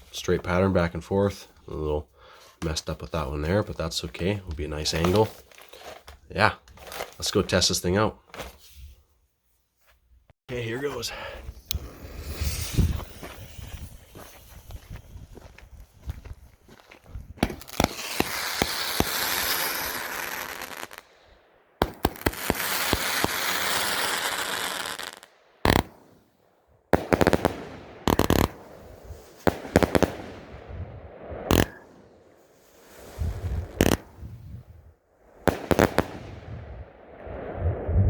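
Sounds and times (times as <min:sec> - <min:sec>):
dense firework crackling: 0:11.5 - 0:15.2, 0:17.3 - 0:26.3, 0:26.9 - 0:37.9
firework launch shots: 0:11.6 - 0:14.5, 0:17.4 - 0:21.2, 0:21.8 - 0:26.3, 0:26.9 - 0:34.6, 0:35.4 - 0:37.5.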